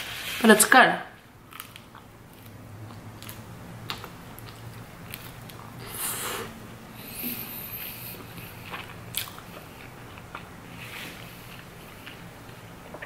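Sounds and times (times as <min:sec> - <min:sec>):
chewing with wet mouth clicks: 0:01.5 - 0:05.7, 0:08.2 - 0:10.5.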